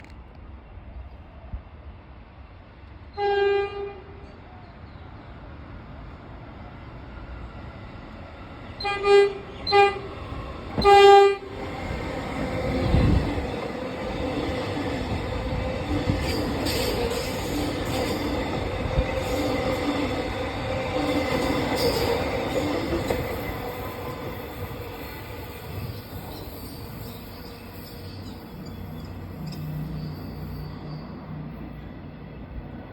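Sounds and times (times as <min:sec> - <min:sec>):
electric train horn blast: 0:03.1 - 0:04.2, 0:08.8 - 0:10.2, 0:10.8 - 0:11.6
electric train passing: 0:03.9 - 0:32.9.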